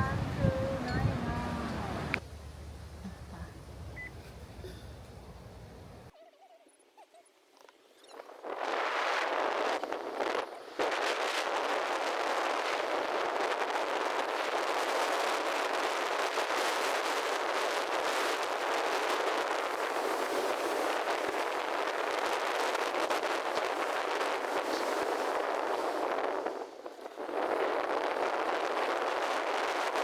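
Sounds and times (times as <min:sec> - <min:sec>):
surf rushing: 0:00.0 - 0:02.2
strong wind: 0:00.0 - 0:06.1, 0:08.4 - 0:30.0.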